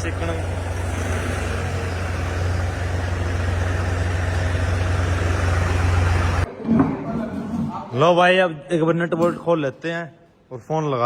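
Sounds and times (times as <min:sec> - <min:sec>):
diesel engine running: 0:00.0 - 0:06.5.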